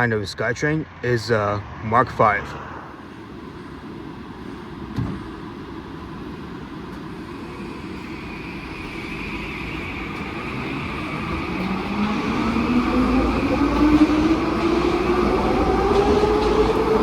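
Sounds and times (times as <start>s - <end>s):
train running: 1.6s - 17.0s.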